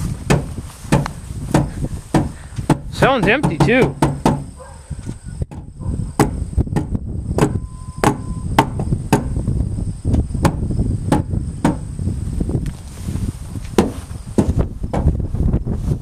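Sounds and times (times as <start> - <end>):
knocking on empty fuel tank: 0.3 - 4.5, 5.5 - 9.4, 10.4 - 11.9
steady beep: 7.5 - 8.6.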